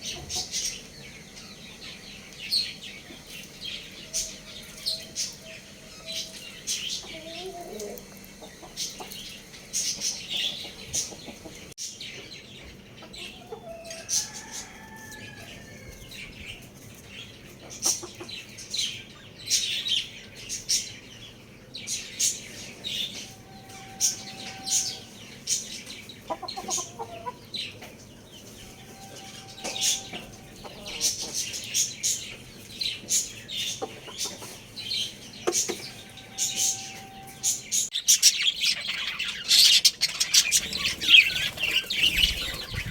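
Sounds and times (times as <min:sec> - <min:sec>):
chicken clucking: 0:00.0 - 0:00.8, 0:04.1 - 0:11.7, 0:12.6 - 0:16.8, 0:17.5 - 0:18.5, 0:22.7 - 0:37.9, 0:38.7 - 0:42.9
birds chirping: 0:00.0 - 0:42.9.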